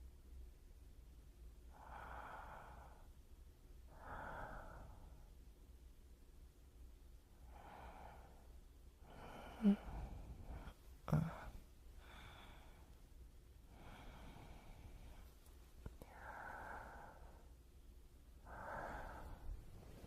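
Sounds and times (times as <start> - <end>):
slow breathing: 1.7 - 3.2, 3.9 - 5.4, 7.4 - 17.6, 18.4 - 20.0.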